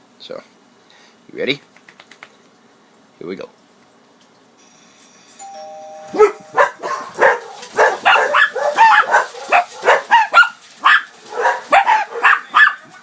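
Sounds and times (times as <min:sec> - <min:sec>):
doorbell chime from tv: 0:05.2 - 0:07.3
dogs barking rapidly: 0:06.2 - 0:13.0.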